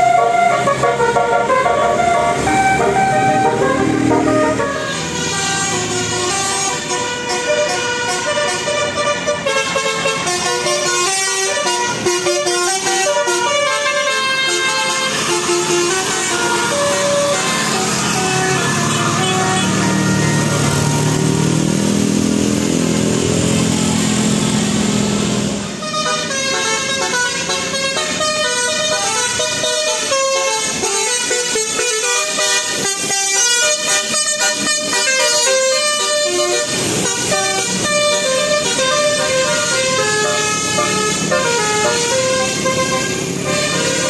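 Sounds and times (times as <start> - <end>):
multi-tone air horn tune: 0.0 - 21.3, 25.8 - 44.0
steady engine-like noise: 15.2 - 25.8.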